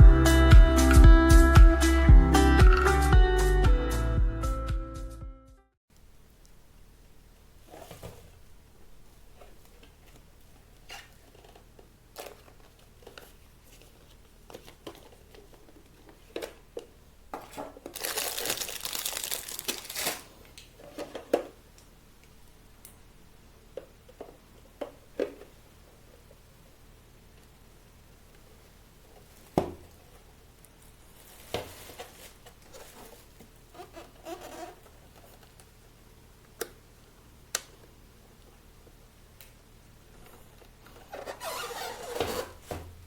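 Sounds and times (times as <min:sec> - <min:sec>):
crinkling rustling: 0:07.5 - 0:21.3, 0:29.1 - 0:35.8.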